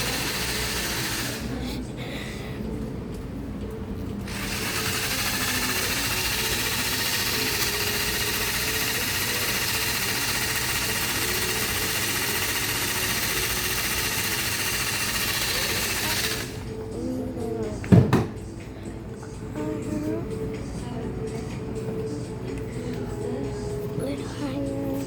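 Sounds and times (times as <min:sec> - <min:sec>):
small motor buzzing: 0:00.0 - 0:01.6, 0:04.3 - 0:17.0.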